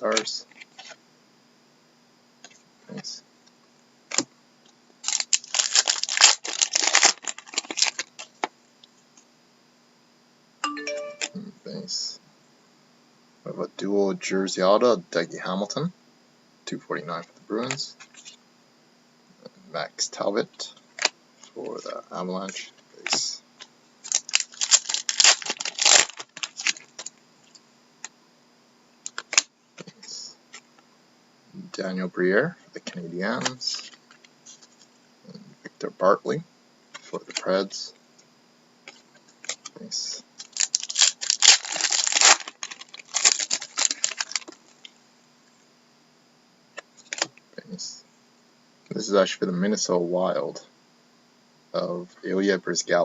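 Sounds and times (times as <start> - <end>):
wrapper crinkling and tearing: 5.0 - 8.3, 24.0 - 27.1, 40.4 - 44.7.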